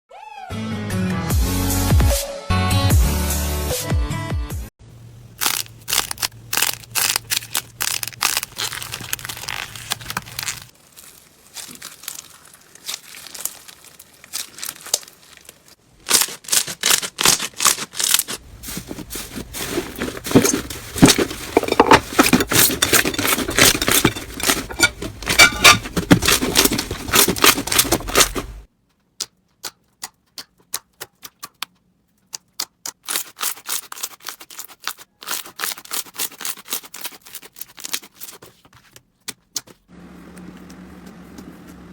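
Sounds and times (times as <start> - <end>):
crunchy slime crackling: 5.3 - 28.7.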